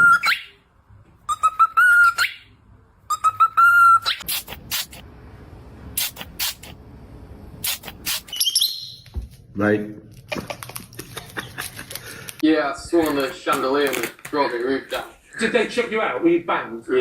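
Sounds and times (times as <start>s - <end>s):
parrot screeching: 0.0s - 0.6s, 1.3s - 2.5s, 3.1s - 4.3s
parrot whistling: 0.0s - 0.6s, 1.3s - 4.3s, 8.2s - 9.0s.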